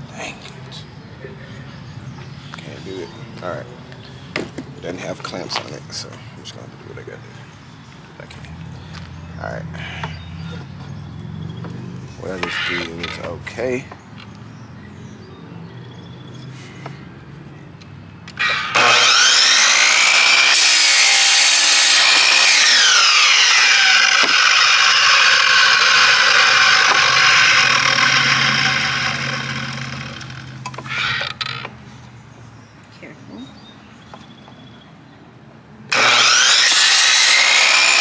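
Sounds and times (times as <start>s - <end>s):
electric saw motor whining: 12.2s - 13.3s, 18.3s - 31.8s, 35.9s - 38.0s
saw blade cutting wood: 12.2s - 13.7s, 18.3s - 31.7s, 35.9s - 38.0s.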